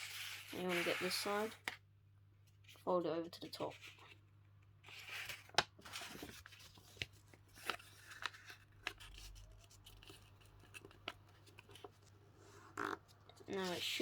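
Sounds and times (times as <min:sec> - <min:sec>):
paper being folded and creased: 0:00.0 - 0:01.8, 0:04.8 - 0:14.0.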